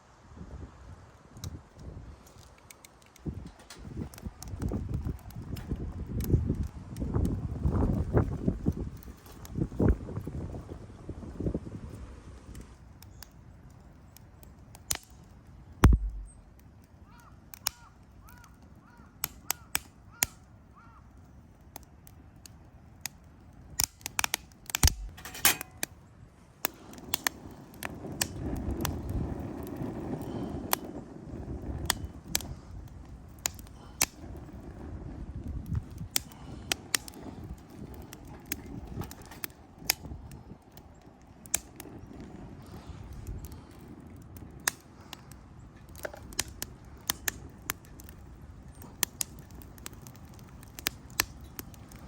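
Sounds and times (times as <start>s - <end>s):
firewood crackling and popping: 0.7s - 52.0s
low rushing sound: 15.8s - 16.4s.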